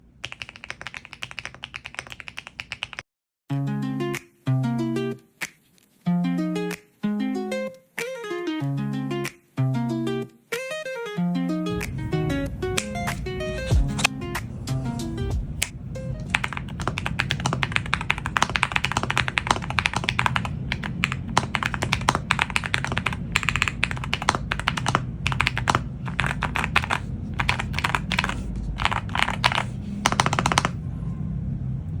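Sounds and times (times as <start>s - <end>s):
mechanical keyboard key clacks: 16.2s - 30.8s.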